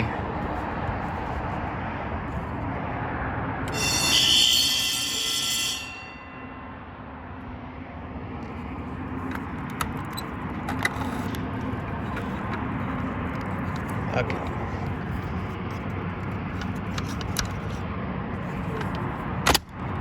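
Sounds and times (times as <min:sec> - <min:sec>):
fire alarm bell ringing: 0:03.7 - 0:06.8.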